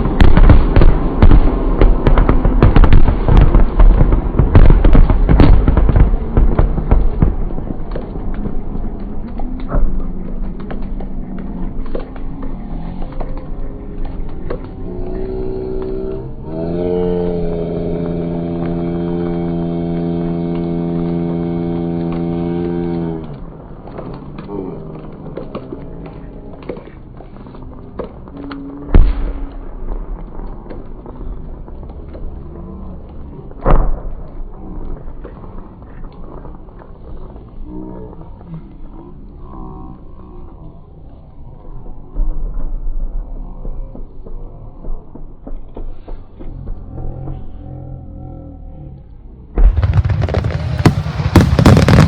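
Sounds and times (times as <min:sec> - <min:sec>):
loud firework bang: 0:00.0 - 0:08.0, 0:49.6 - 0:52.0
fireworks popping and crackling: 0:00.0 - 0:39.0, 0:40.6 - 0:47.5, 0:49.6 - 0:52.0
faint crowd chatter: 0:05.5 - 0:18.7, 0:22.4 - 0:52.0
aerial firework shell burst: 0:49.6 - 0:52.0.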